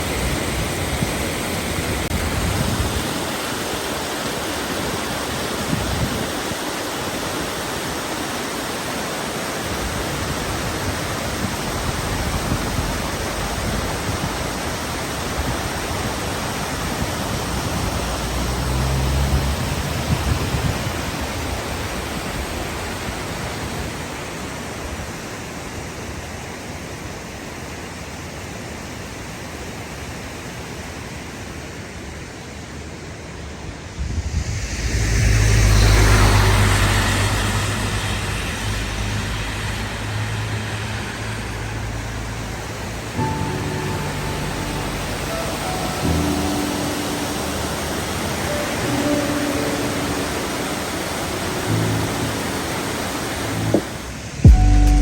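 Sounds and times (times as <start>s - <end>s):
rain falling: 1.6s - 23.4s, 34.5s - 54.6s
low rumbles: 33.7s - 40.1s, 51.1s - 55.0s.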